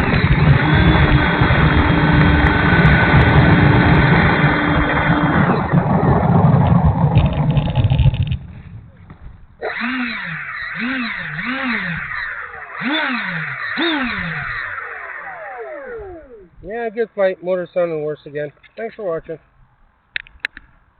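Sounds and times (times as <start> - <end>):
electric ducted fans rushing: 0.0 - 8.3, 9.6 - 16.9
faint steady whine: 0.0 - 18.7.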